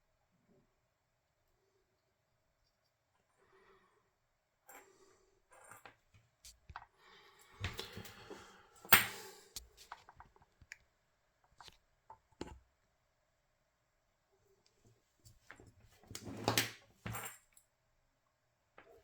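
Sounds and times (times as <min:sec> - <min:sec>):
small clicks and rustling: 0:07.5 - 0:12.6.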